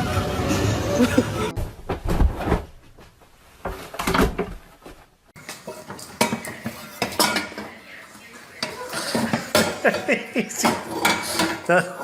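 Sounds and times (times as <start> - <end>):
hard objects clattering and knocking: 8.6 - 11.7.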